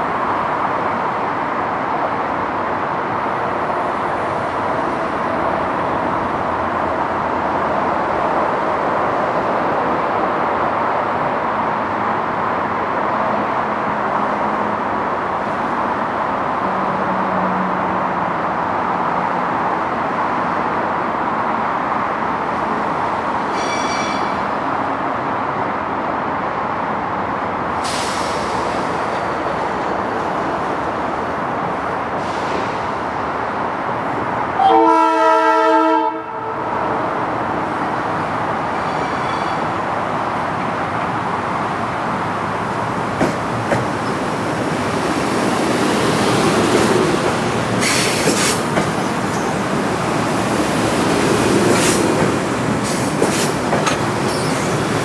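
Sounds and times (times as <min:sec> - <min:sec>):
train horn blast: 0:34.6 - 0:36.8.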